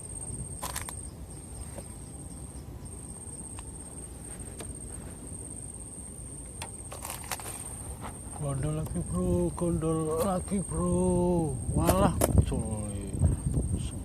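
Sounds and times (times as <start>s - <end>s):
insect trilling: 0.0s - 14.0s
low outdoor rumble: 0.0s - 14.0s.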